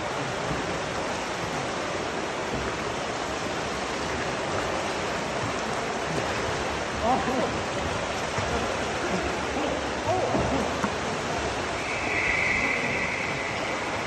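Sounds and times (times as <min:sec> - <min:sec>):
steady rushing noise: 0:11.3 - 0:14.0.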